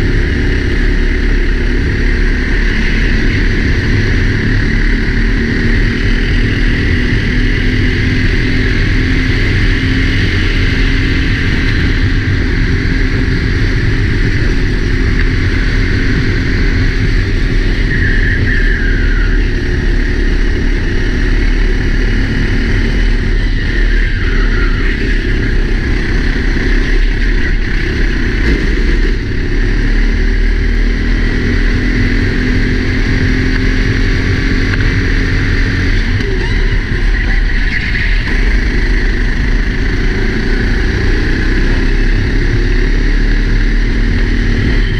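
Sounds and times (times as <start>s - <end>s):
heavy low rumble: 0.0s - 44.9s
kart engine running hard: 0.0s - 44.9s.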